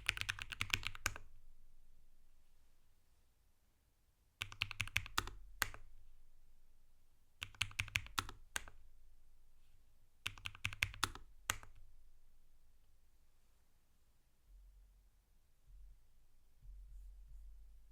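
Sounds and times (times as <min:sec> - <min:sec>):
mechanical keyboard keystrokes: 0:00.0 - 0:01.2, 0:04.4 - 0:05.8, 0:07.4 - 0:08.8, 0:10.3 - 0:11.8.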